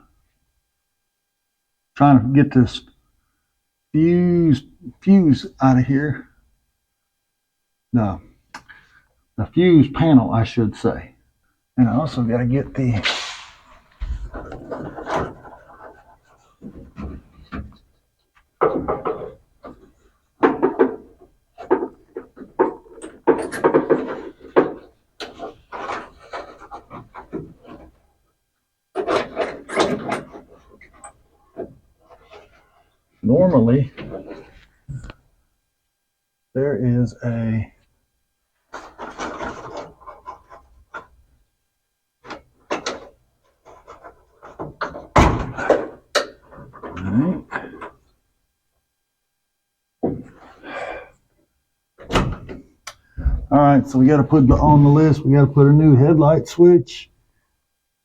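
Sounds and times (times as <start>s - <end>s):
tools and parts clattering: 14.0s - 17.8s, 18.6s - 28.0s, 28.9s - 32.6s, 38.7s - 41.2s
heavy thump: 53.2s - 53.6s, 54.4s - 55.0s.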